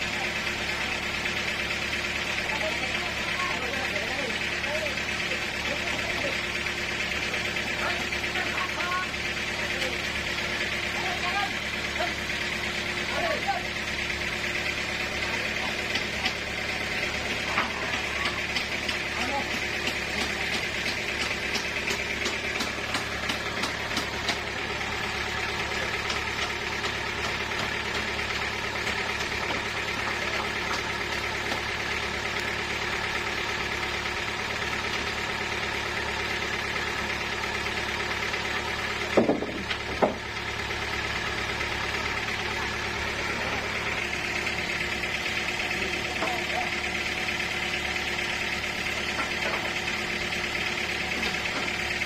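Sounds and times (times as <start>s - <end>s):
sawmill machinery motor drone: 0.0s - 52.0s
loud knocks: 39.1s - 40.2s.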